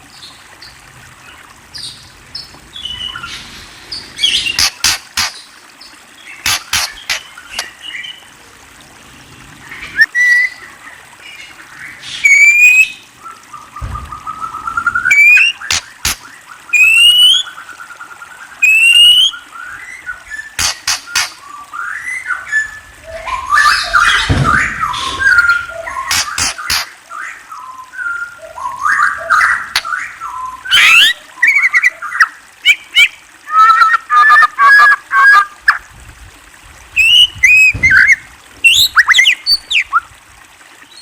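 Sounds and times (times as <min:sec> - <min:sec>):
songbird clicks: 0:04.5 - 0:05.4, 0:06.4 - 0:07.7, 0:15.1 - 0:17.2, 0:20.6 - 0:21.4, 0:26.0 - 0:26.9
low bird whistle: 0:12.2 - 0:13.0, 0:13.8 - 0:15.9, 0:16.8 - 0:17.5, 0:18.6 - 0:19.4
bird whistling: 0:12.2 - 0:16.2, 0:16.8 - 0:17.5, 0:18.6 - 0:19.4, 0:20.4 - 0:26.9, 0:27.6 - 0:31.9, 0:32.6 - 0:35.4, 0:37.0 - 0:40.0.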